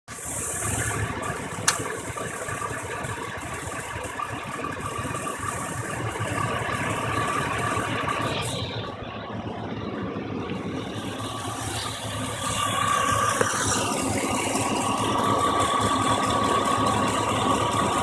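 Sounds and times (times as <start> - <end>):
engine idling with misfire: 0.0 - 18.0
sharp click: 1.7 - 1.9.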